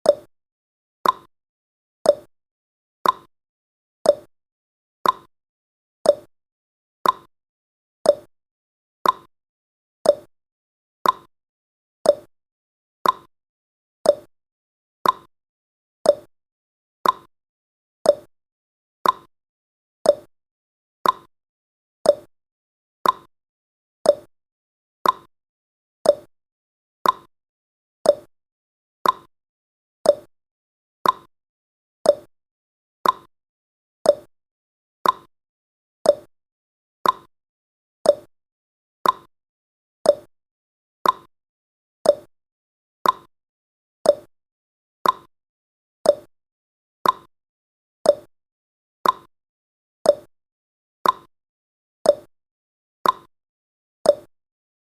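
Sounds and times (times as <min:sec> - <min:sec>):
clock ticking: 0:13.0 - 0:13.3, 0:29.0 - 0:29.3, 0:33.0 - 0:33.3, 0:37.0 - 0:37.3, 0:39.0 - 0:39.3, 0:43.0 - 0:43.3, 0:45.0 - 0:45.3, 0:47.0 - 0:47.3.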